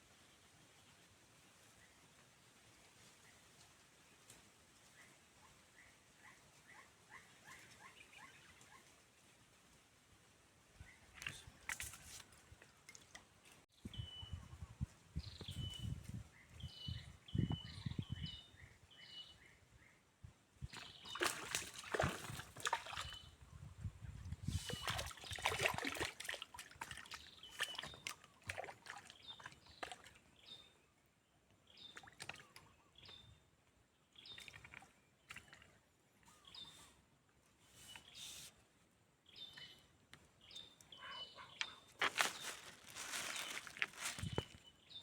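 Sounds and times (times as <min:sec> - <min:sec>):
water splashing and sloshing: 0:11.1 - 0:13.6, 0:20.7 - 0:23.3, 0:24.5 - 0:30.4, 0:31.9 - 0:32.6, 0:34.2 - 0:35.9, 0:42.0 - 0:44.6
bird chirping: 0:39.3 - 0:42.6.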